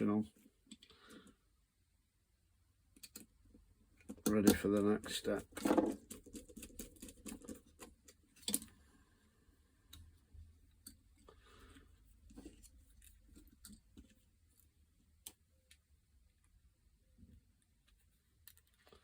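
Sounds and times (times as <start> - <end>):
small parts clicking and tapping: 2.9 - 8.8, 9.8 - 16.6, 17.5 - 19.0.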